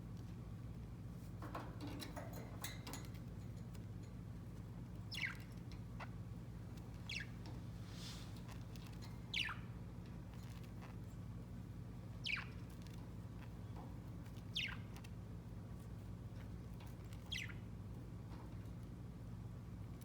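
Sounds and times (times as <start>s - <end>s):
steady low hum: 0.0s - 20.0s
budgerigar chirps: 9.3s - 9.7s, 12.2s - 12.6s, 14.6s - 14.9s.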